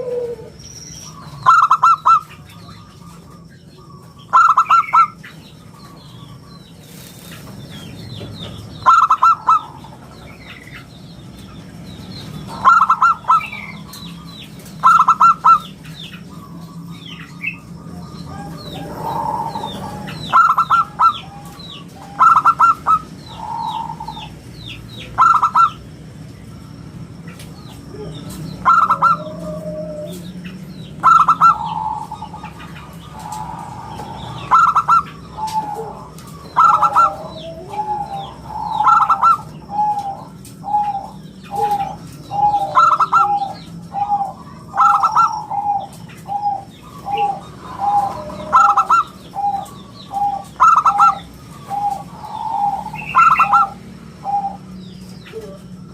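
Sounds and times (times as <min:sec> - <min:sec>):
low coo notes: 0:00.0 - 0:00.6, 0:35.4 - 0:54.6
dove cooing staccato phrases: 0:00.0 - 0:06.7, 0:07.8 - 0:55.9.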